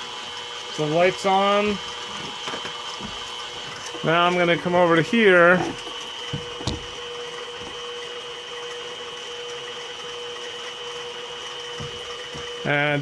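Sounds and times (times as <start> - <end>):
electrical hum with high whine: 0.0 - 8.6.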